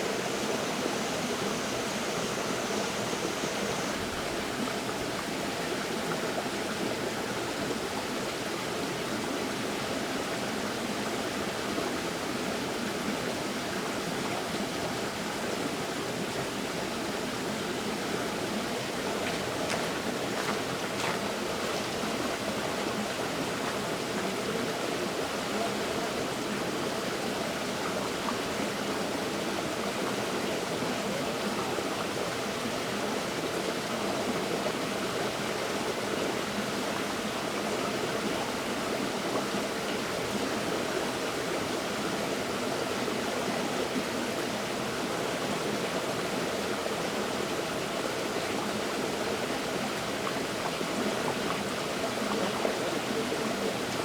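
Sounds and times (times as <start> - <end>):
river flowing over rocks: 15.0 - 54.0.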